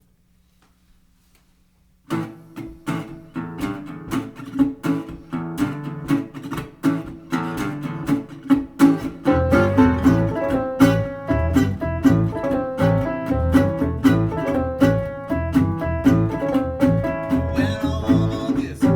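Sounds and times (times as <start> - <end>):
acoustic guitar blues: 2.1 - 18.9
deep bass guitar notes: 9.3 - 18.9.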